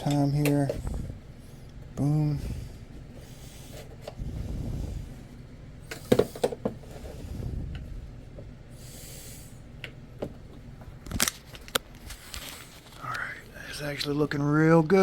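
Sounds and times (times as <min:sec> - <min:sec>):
hands rubbing and shuffling: 0:10.8 - 0:14.2.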